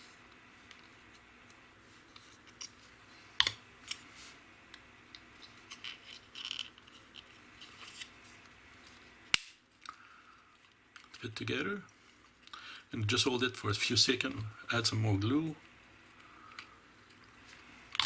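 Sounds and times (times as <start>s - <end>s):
plastic parts clicking and scraping: 5.4s - 8.1s.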